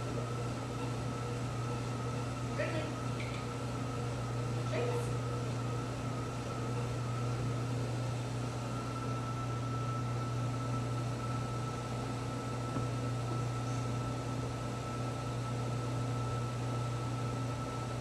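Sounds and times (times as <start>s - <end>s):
low mechanical hum: 0.0s - 18.0s
thin high whine: 0.0s - 18.0s.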